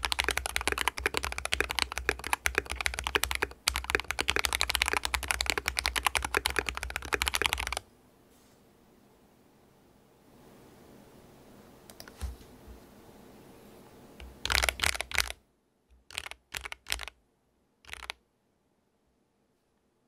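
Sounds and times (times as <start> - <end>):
mechanical keyboard typing: 0.0 - 7.8, 14.2 - 17.2, 17.8 - 18.2.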